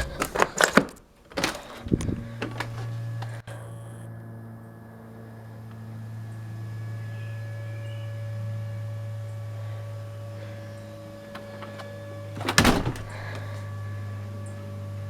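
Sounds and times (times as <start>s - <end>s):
distant vacuum cleaner drone: 0.0s - 15.0s.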